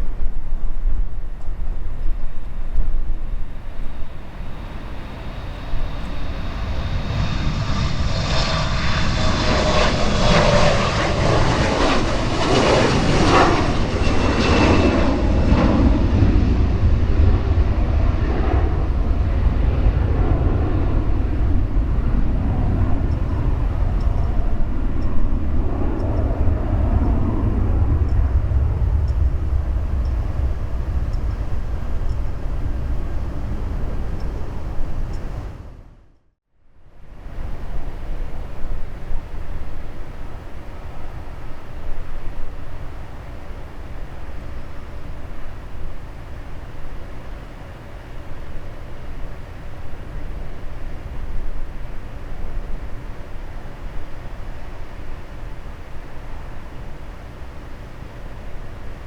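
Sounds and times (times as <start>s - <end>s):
wind on microphone: 0.0s - 36.0s
jet engines passing by: 0.0s - 36.1s, 36.9s - 59.0s.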